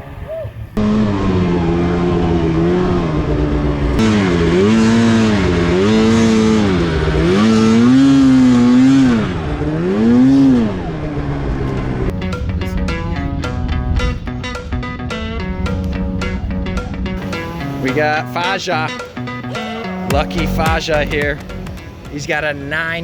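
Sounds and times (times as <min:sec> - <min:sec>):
snowmobile engine revving: 0:00.8 - 0:11.7, 0:15.6 - 0:22.0.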